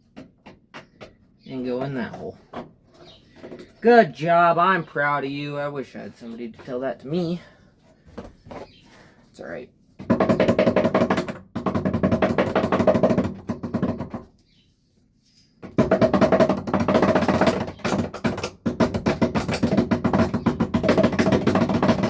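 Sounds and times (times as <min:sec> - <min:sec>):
music with fast drum beat: 0:10.1 - 0:14.1, 0:15.8 - 0:22.0.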